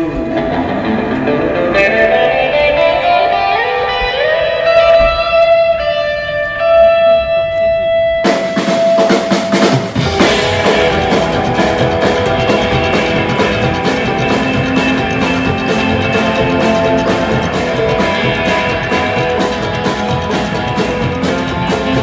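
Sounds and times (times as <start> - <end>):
electric guitar slide notes: 0.0 - 22.0
rock band playing: 8.2 - 22.0.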